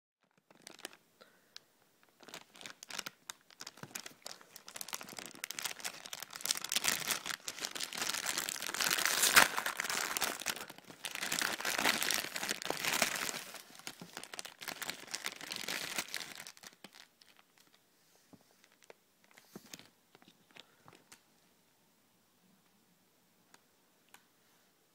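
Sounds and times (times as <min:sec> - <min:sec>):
foil wrapper crinkling and tearing: 0:00.2 - 0:01.0, 0:02.1 - 0:17.8.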